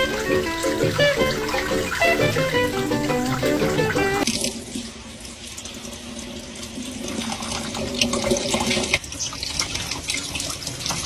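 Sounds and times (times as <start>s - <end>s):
water running from tap: 0.0s - 4.8s
sharp water splashes: 0.0s - 11.0s.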